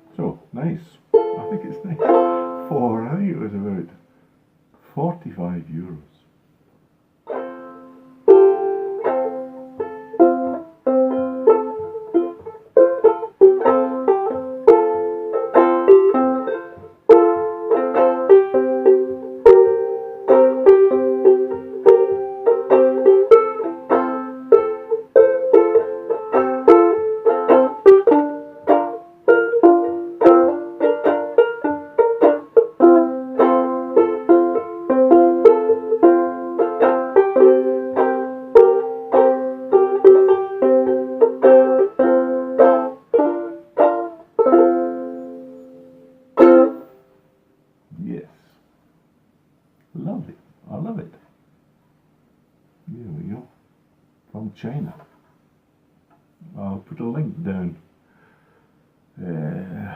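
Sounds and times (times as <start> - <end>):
banjo ukulele strumming chords: 0.0 - 4.0, 7.2 - 47.1.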